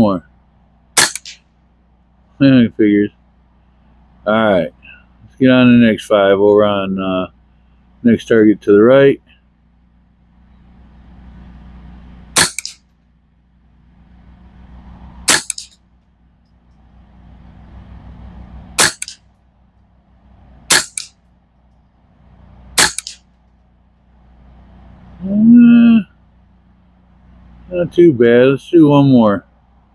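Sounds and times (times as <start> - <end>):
rifle shots: 1.0 - 1.4, 12.4 - 12.9, 15.2 - 15.8, 18.8 - 19.2, 20.7 - 21.2, 22.8 - 23.3.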